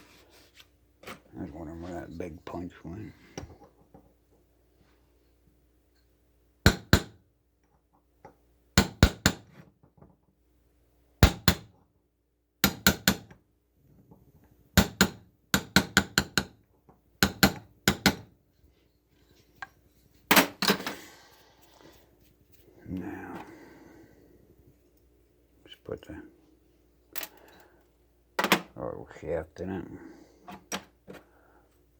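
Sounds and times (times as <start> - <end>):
hammer striking metal punch: 6.6 - 7.2, 12.6 - 13.3, 14.8 - 16.6, 17.2 - 18.3.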